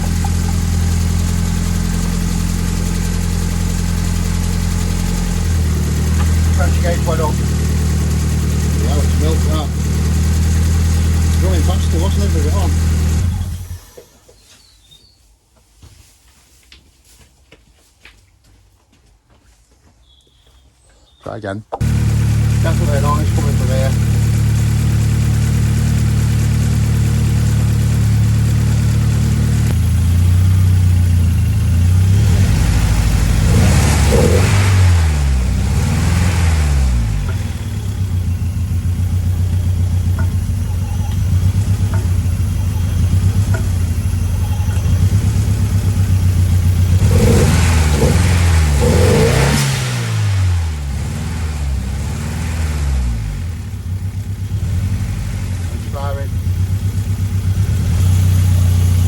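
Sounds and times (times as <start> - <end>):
car engine idling and revving: 0.0 - 14.1, 21.8 - 59.0
pulley bearing noise: 37.2 - 49.5.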